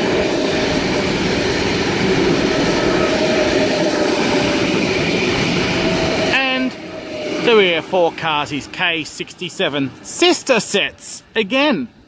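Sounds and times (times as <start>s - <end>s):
train wheels rolling on rail: 0.0s - 11.1s.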